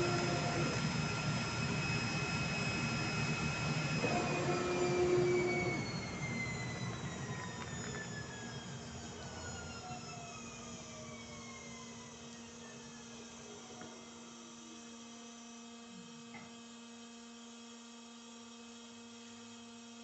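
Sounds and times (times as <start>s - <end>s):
motor spinning down: 0.0s - 15.9s
low machine hum: 0.0s - 16.3s
cutting machine whine: 0.0s - 20.0s.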